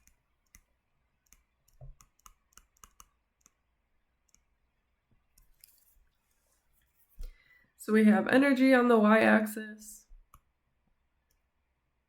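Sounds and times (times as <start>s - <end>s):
computer mouse clicking: 0.0s - 3.6s, 4.2s - 4.5s, 5.3s - 6.0s
soft scratchy rustle: 5.5s - 7.2s.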